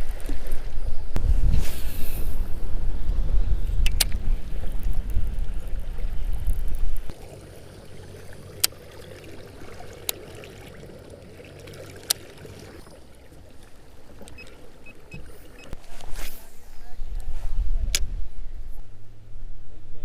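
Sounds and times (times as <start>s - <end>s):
wind buffeting microphone: 0.0s - 11.2s
water lapping against hull: 1.8s - 16.1s.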